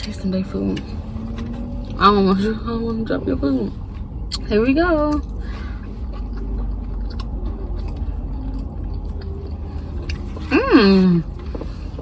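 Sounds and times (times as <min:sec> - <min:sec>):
low steady hum: 0:00.0 - 0:12.0
chewing sandwich: 0:05.2 - 0:12.0.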